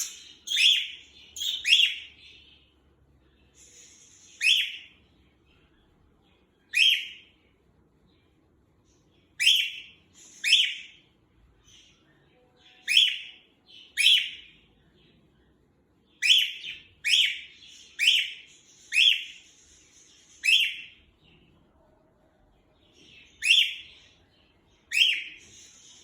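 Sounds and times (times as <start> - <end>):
cockatiel contact calls: 0.0 - 2.0.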